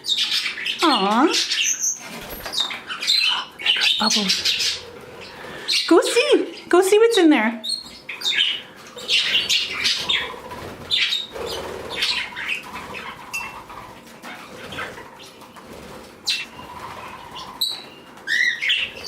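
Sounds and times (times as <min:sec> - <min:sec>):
parrots chirping: 0:00.0 - 0:06.8, 0:07.6 - 0:19.0
wings flapping: 0:01.9 - 0:02.9, 0:09.0 - 0:19.0.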